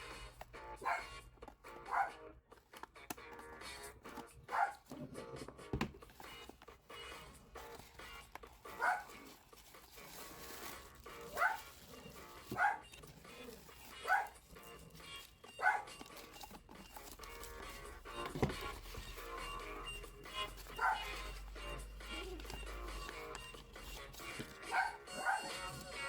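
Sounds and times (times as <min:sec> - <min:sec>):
dog barking: 0:00.8 - 0:01.2, 0:01.9 - 0:02.2, 0:04.5 - 0:04.9, 0:08.7 - 0:09.3, 0:11.3 - 0:11.8, 0:12.4 - 0:13.0, 0:14.0 - 0:14.4, 0:15.5 - 0:16.0, 0:20.7 - 0:21.3, 0:24.6 - 0:25.8.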